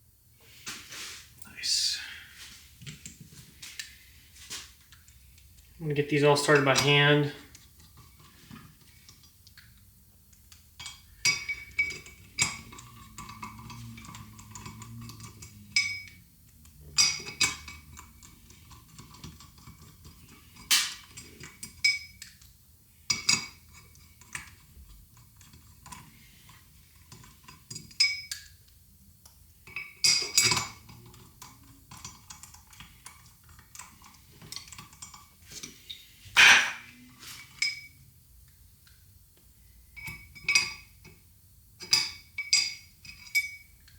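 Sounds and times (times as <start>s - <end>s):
metal bolts and tools clinking: 10.8s - 16.2s, 29.7s - 35.3s, 41.8s - 43.7s.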